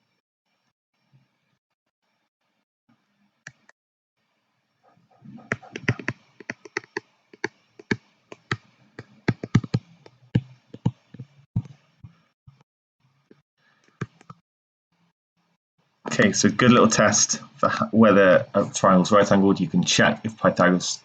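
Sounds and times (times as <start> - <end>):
sharp clicks and taps on hard surface: 5.5 - 11.8.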